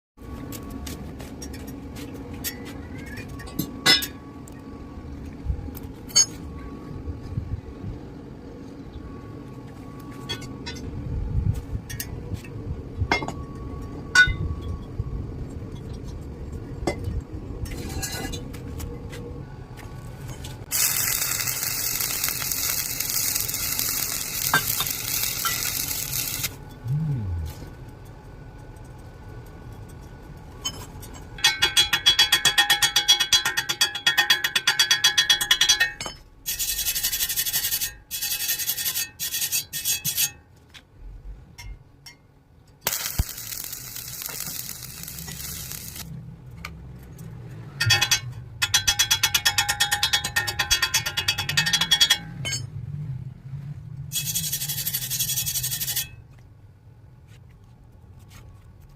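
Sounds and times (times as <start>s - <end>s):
welding arc crackling: 20.7s - 27.8s, 42.8s - 46.1s, 54.1s - 56.0s.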